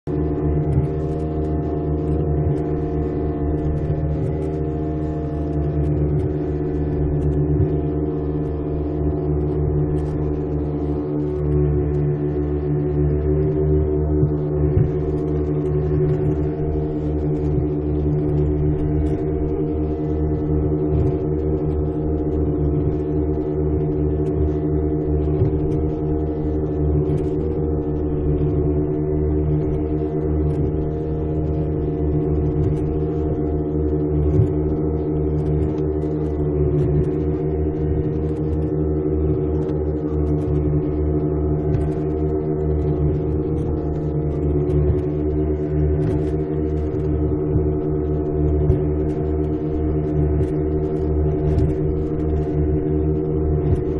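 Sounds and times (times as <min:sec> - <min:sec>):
motorboat engine droning: 0:00.0 - 0:53.9.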